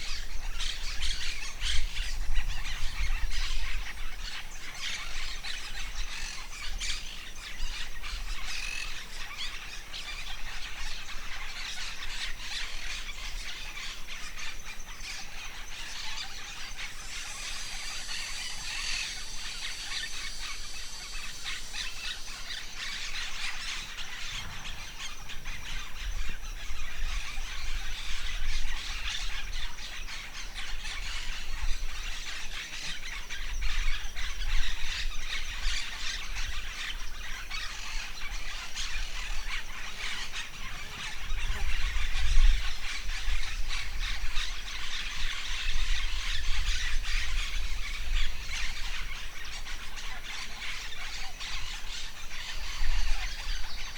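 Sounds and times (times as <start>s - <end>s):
forest birds chirping: 0.0s - 53.9s
wind buffeting microphone: 16.8s - 50.0s.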